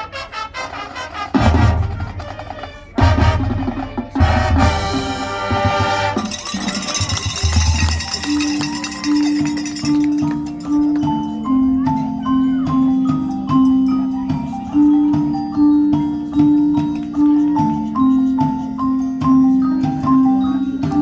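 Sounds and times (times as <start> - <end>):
marimba-like mallet percussion: 5.9 - 21.0.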